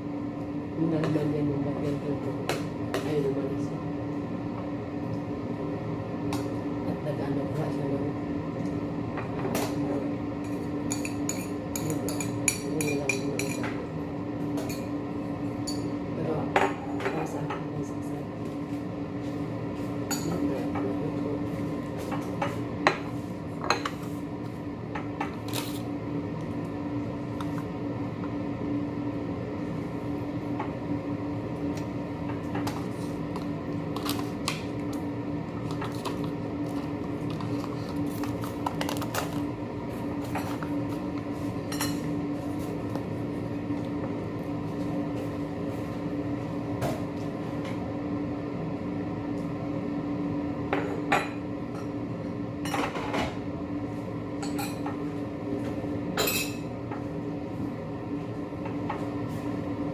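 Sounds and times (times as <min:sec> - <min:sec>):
steady low hum: 0:00.0 - 0:59.9
utensils and dishes clinking: 0:10.4 - 0:13.8, 0:56.2 - 0:56.7.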